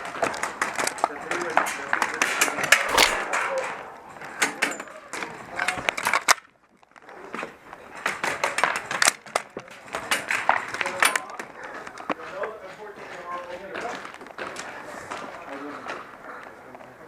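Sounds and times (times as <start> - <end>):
airsoft rifle shots: 2.9 - 3.2.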